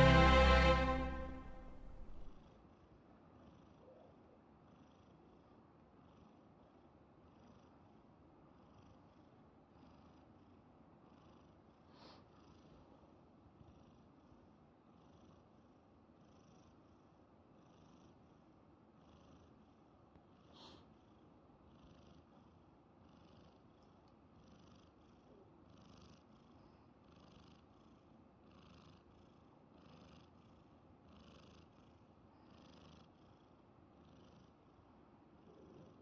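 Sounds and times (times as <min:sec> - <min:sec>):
kitten snoring wheezily: 0:20.4 - 0:21.1, 0:35.4 - 0:36.0.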